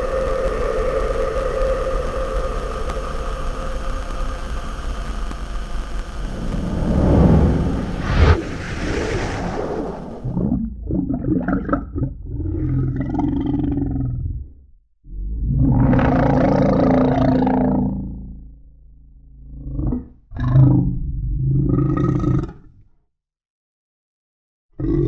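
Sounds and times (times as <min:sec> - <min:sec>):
low rumbling drone: 0:05.9 - 0:10.4
sharp crack: 0:06.0 - 0:10.4.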